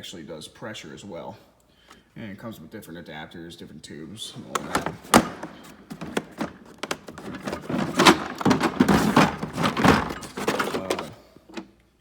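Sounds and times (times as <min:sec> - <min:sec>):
tools clicking and knocking: 0:04.5 - 0:11.7.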